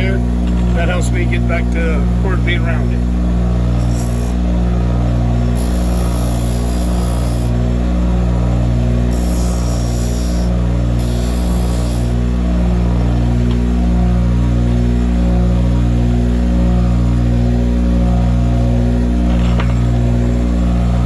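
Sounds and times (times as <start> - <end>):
grinder motor running: 0.0 - 21.0
metal hissing on grinding wheel: 3.8 - 4.4, 5.6 - 7.6, 9.1 - 12.2.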